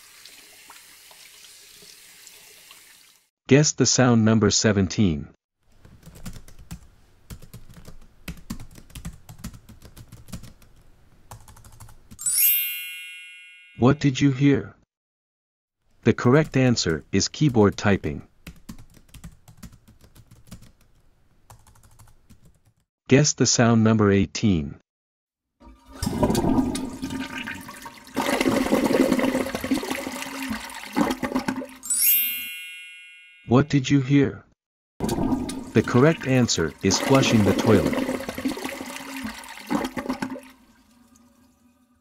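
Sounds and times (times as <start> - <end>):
toilet flushing: 0.0 - 3.3, 25.6 - 31.8, 35.0 - 42.0
keyboard typing: 5.8 - 12.2, 18.4 - 22.8
bright chime: 12.2 - 13.8, 31.8 - 33.5.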